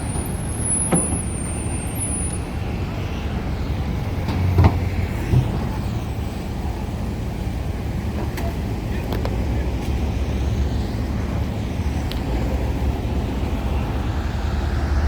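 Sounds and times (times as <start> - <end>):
engines rumbling: 0.0 - 15.0.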